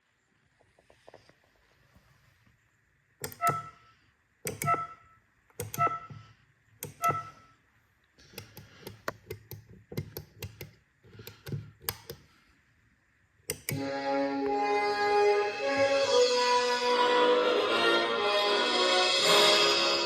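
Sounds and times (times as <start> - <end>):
loud clicks: 4.4 - 4.8, 8.3 - 12.3, 13.5 - 13.8.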